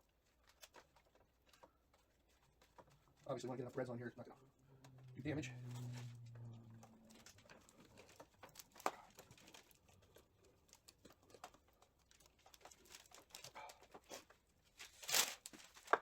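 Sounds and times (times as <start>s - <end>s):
metal scraping: 4.9s - 8.1s.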